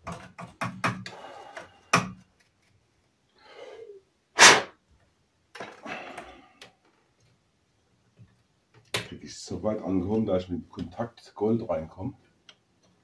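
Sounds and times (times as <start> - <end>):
person sneezing: 4.4 - 4.7.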